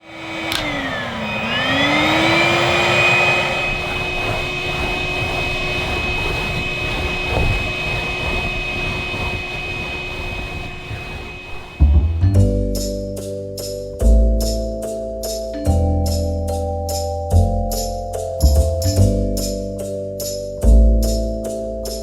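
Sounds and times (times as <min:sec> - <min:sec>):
vacuum cleaner whining: 0:00.0 - 0:12.9.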